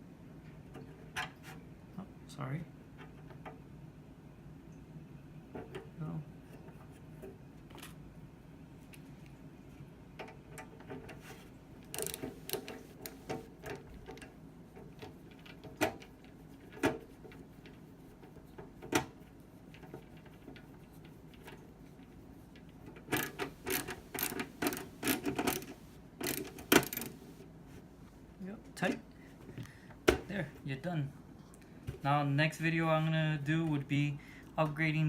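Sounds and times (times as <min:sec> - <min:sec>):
screwdriver clicking tightening screw: 0:11.9 - 0:13.4, 0:23.1 - 0:27.2.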